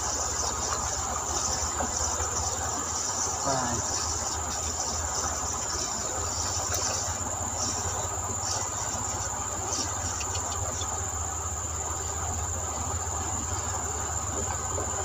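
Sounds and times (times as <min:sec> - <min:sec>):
background hiss: 0:00.0 - 0:15.0
insects droning: 0:00.0 - 0:15.0.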